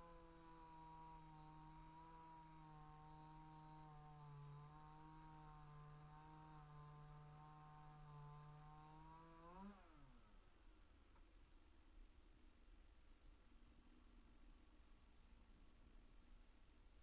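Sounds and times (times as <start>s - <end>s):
chainsaw engine running: 0.0s - 10.2s.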